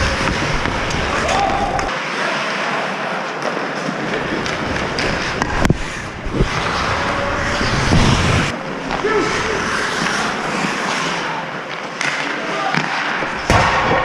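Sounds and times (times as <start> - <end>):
skates hissing on ice: 4.2 - 11.5.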